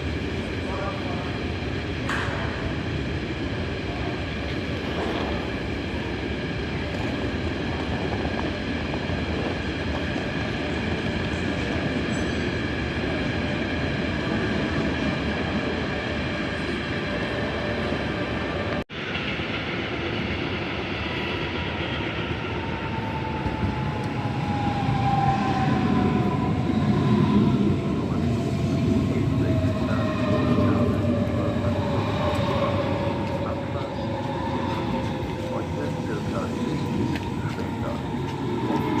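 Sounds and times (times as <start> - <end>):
trains rumbling: 0.0 - 39.0.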